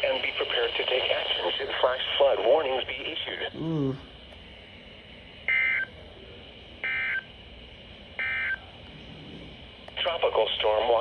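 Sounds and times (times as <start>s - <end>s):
radio hiss: 0.0s - 3.5s, 10.0s - 11.0s.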